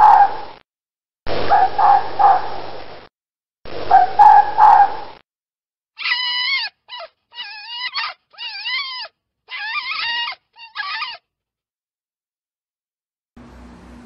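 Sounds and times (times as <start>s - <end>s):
fox calling: 0.0s - 0.6s, 1.5s - 2.6s, 3.8s - 5.2s, 6.0s - 11.2s.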